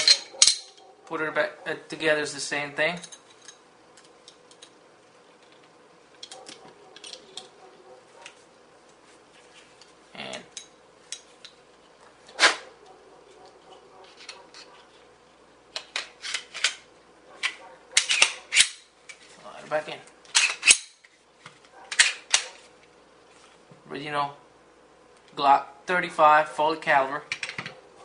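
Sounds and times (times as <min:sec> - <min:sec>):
pistol parts clicking and rattling: 0:00.0 - 0:00.9, 0:05.4 - 0:07.6, 0:13.7 - 0:14.9, 0:15.7 - 0:19.2, 0:20.2 - 0:21.1, 0:21.7 - 0:22.6, 0:27.3 - 0:27.8.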